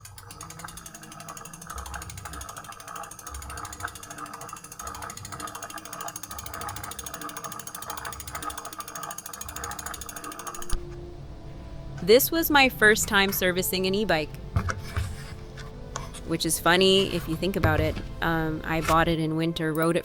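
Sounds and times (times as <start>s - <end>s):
ratchet clicking: 0.0s - 10.8s.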